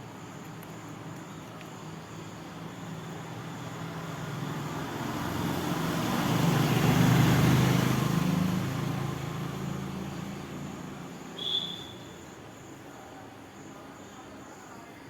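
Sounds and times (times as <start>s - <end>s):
vehicle passing by: 3.4s - 11.1s.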